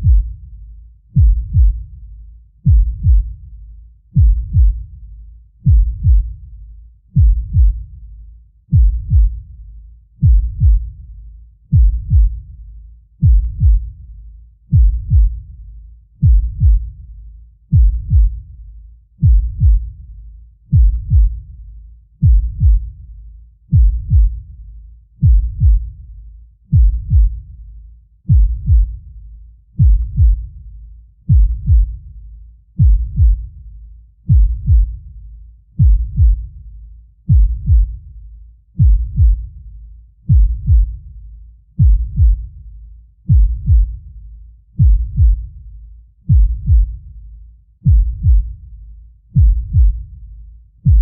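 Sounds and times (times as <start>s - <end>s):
deep heartbeat thumps: 0.0s - 0.5s, 1.1s - 2.0s, 2.6s - 3.5s, 4.1s - 5.0s, 5.6s - 6.5s, 7.1s - 8.0s, 8.7s - 9.6s, 10.2s - 11.0s, 11.7s - 12.6s, 13.2s - 14.0s, 14.7s - 15.6s, 16.2s - 17.0s, 17.7s - 18.5s, 19.2s - 20.0s, 20.7s - 21.6s, 22.2s - 23.0s, 23.7s - 24.6s, 25.2s - 26.0s, 26.7s - 27.6s, 28.3s - 29.2s, 29.8s - 30.7s, 31.3s - 32.2s, 32.8s - 33.7s, 34.3s - 35.2s, 35.8s - 44.2s, 44.8s - 47.2s, 47.8s - 51.0s.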